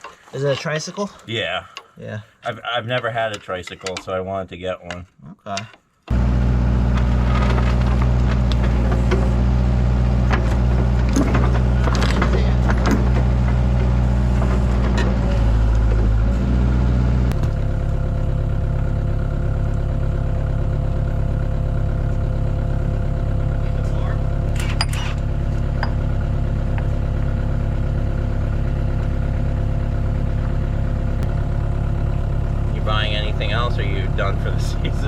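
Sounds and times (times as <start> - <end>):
excavator diesel engine running: 6.1 - 35.0
metallic clanks and knocks: 10.3 - 16.2, 24.4 - 27.0.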